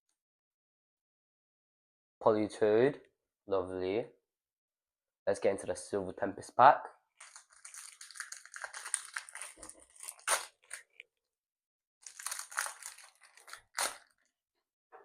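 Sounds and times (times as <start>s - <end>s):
foil wrapper crinkling and tearing: 7.2s - 11.0s, 12.0s - 14.3s.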